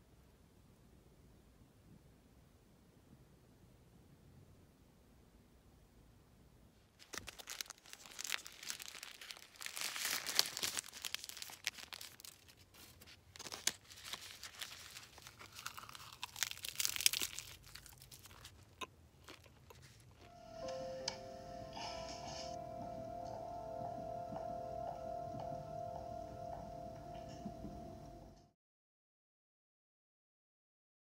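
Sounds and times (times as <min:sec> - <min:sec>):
dry material crinkling and tearing: 0:07.0 - 0:20.3.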